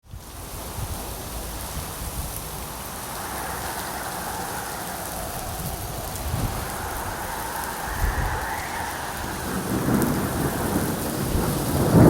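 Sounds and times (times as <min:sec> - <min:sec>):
heavy rain falling: 0:00.0 - 0:12.0
low rumble: 0:02.3 - 0:11.5.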